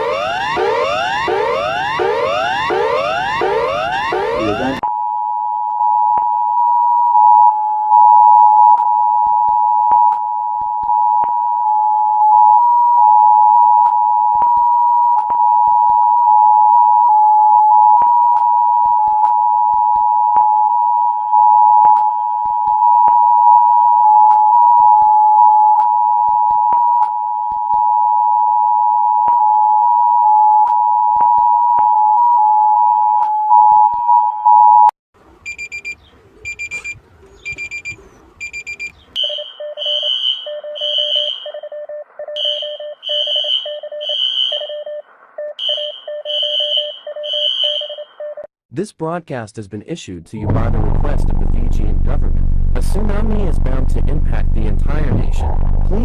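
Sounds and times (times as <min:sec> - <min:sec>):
two-tone alert signal: 0:00.0 - 0:05.0, 0:35.5 - 0:45.0, 0:45.6 - 0:48.1.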